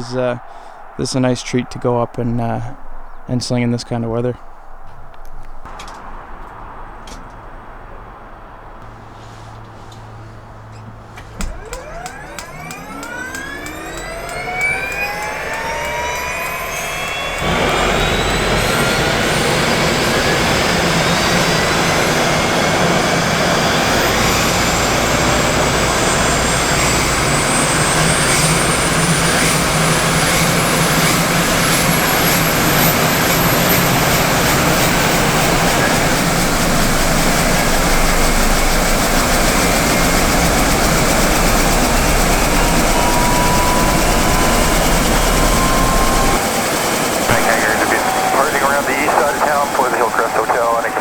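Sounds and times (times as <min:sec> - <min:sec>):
helicopter turbine engine starting up: 0:10.4 - 0:51.0.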